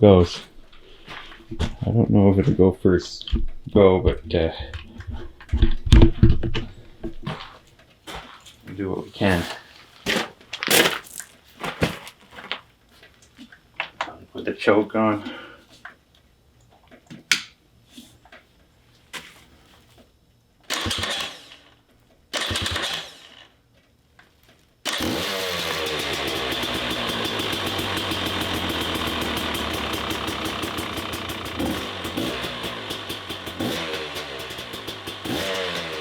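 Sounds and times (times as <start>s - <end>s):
dirt bike engine cranking: 20.7s - 23.6s, 24.8s - 36.0s
dirt bike engine running: 22.4s - 23.4s, 24.9s - 36.0s.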